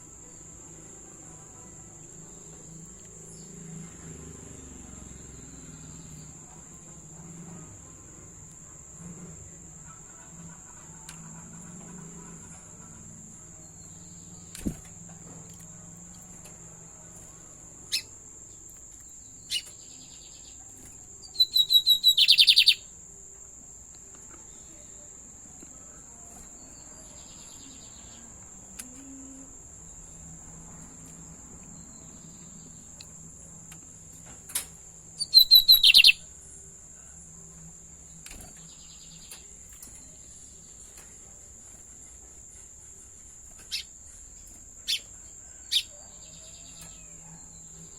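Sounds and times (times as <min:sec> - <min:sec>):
bird singing rapid repeated notes: 0:17.6 - 0:23.0, 0:35.1 - 0:36.3, 0:43.6 - 0:46.0
bird chirps: 0:17.9 - 0:18.2, 0:19.2 - 0:22.9, 0:35.2 - 0:36.3, 0:43.6 - 0:44.2, 0:44.8 - 0:47.9.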